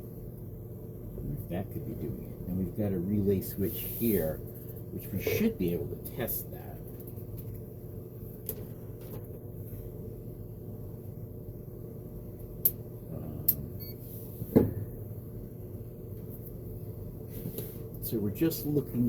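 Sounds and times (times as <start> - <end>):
steady low hum: 0.0 - 19.0.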